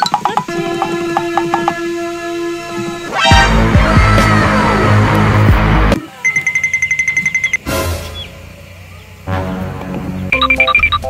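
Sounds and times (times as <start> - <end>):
rapid high electronic beeping: 6.2 - 7.6, 10.3 - 11.0.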